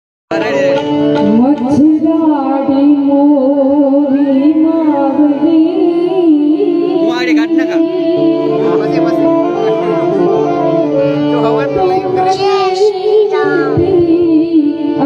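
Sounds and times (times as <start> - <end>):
wavering gliding lead melody: 0.3 - 2.4, 7.0 - 13.8
steady drone: 7.0 - 13.1.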